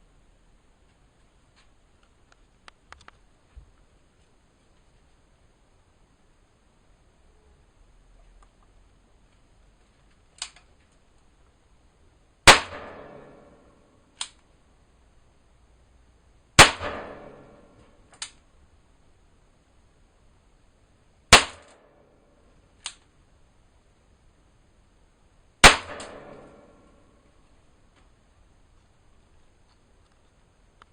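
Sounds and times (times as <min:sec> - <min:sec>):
quiet revolver click: 0:22.8 - 0:23.1.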